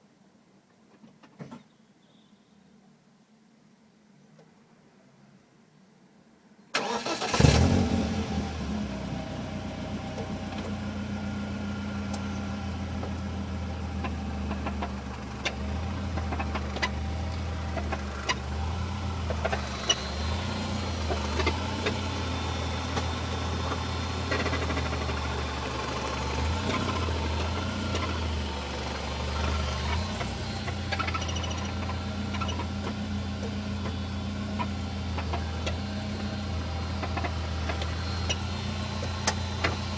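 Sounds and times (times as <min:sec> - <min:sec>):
car engine starting and idling: 0:06.8 - 0:39.9.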